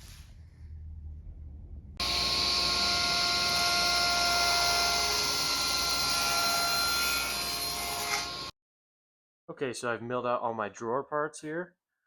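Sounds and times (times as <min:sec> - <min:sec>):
woodworking power tool whining: 0:02.0 - 0:08.5.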